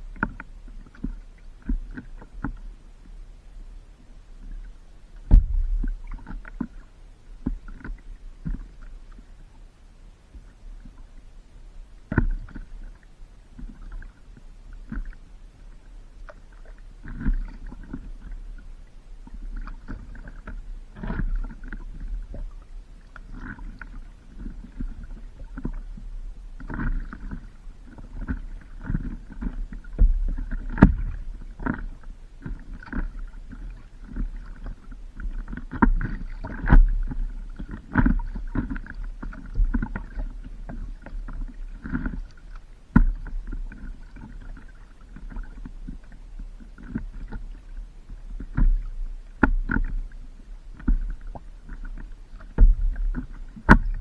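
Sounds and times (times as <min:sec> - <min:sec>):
low microphone rumble: 0:04.5 - 0:08.3
paddle strokes splashing water: 0:12.0 - 0:54.0.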